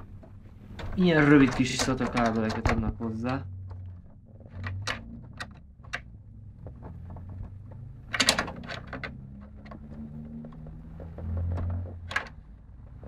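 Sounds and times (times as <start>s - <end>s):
computer parts handled clicking: 0.7s - 6.1s.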